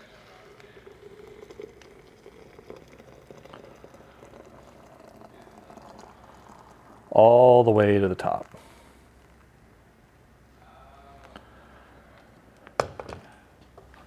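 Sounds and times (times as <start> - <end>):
boiling water pouring and bubbling: 0.0 - 8.6.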